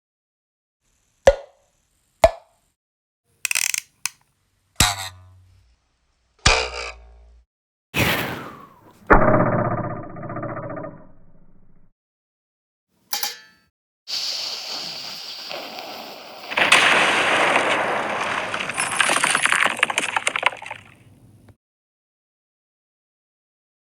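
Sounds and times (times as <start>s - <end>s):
steady hiss: 14.1s - 18.7s
loud rushing noise with crackles: 14.2s - 20.4s.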